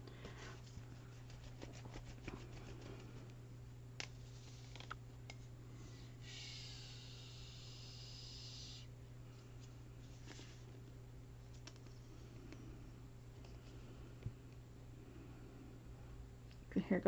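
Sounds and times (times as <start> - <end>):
low electrical hum: 0.0 - 17.0
steady high hiss: 6.0 - 8.9.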